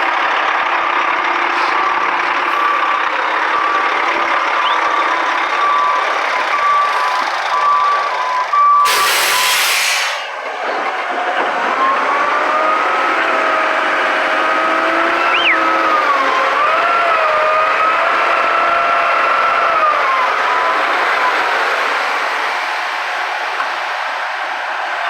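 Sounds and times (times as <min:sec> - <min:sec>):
loud hiss: 0:08.9 - 0:10.4
machinery running noise: 0:08.9 - 0:25.0.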